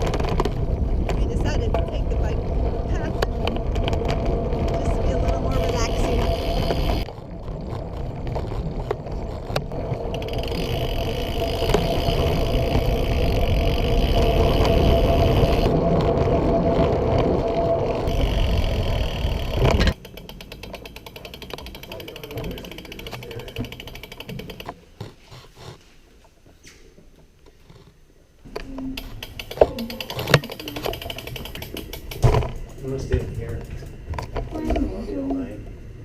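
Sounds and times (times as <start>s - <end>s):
rapid fine ticking: 0.0s - 24.8s, 29.0s - 34.4s
road noise: 0.0s - 24.9s, 28.5s - 36.0s
steady hum: 0.0s - 25.1s.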